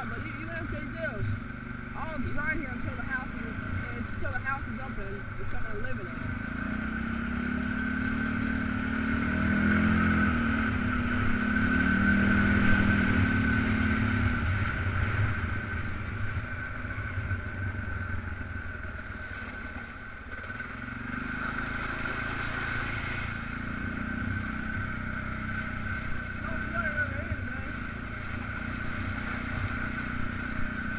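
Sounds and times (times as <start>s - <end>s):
atv engine running: 0.0s - 30.9s.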